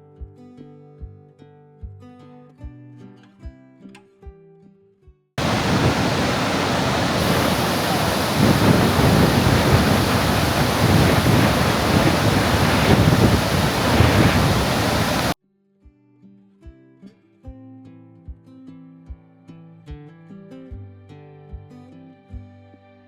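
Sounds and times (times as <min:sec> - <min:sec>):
waterfall rushing: 0:05.4 - 0:15.4
wind buffeting microphone: 0:05.4 - 0:15.4.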